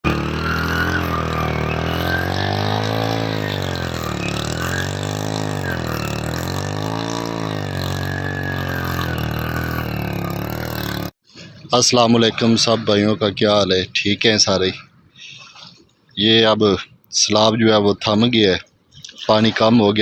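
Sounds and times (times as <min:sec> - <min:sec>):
engine-like drone sweeping in pitch: 0:00.0 - 0:11.1.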